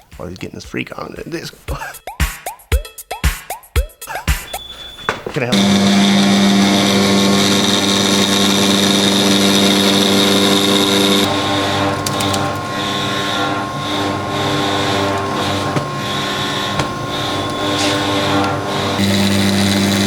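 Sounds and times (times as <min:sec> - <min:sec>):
router spindle whining: 0:04.4 - 0:20.0.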